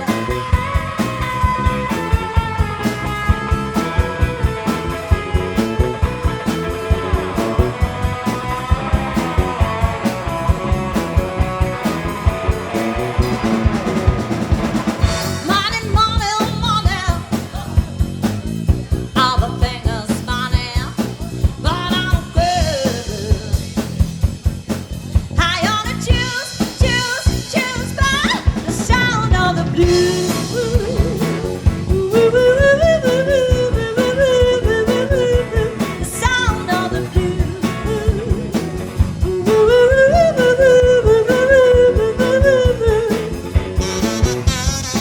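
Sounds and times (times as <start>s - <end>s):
drum kit beat: 0.0s - 45.0s
live blues band playing: 0.0s - 45.0s
person singing wavering line: 39.2s - 43.4s.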